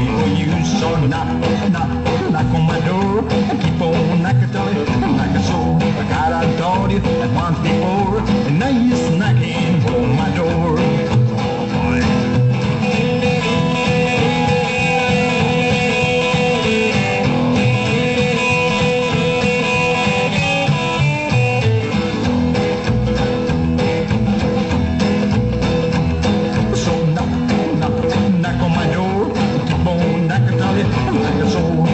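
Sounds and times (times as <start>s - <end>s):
guitar over steady beat: 0.0s - 31.9s.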